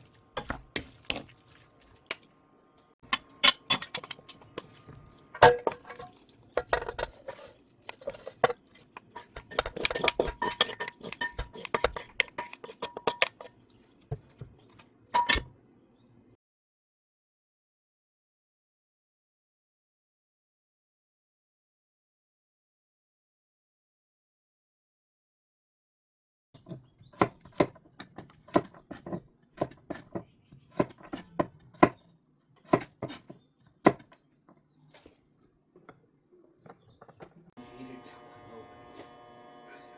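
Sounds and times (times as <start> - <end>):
knife chopping on cutting board: 27.2 - 32.0.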